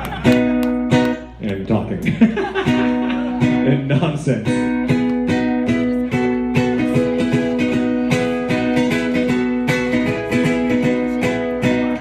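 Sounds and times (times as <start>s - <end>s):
ukulele strumming: 0.0s - 1.4s, 4.4s - 12.0s.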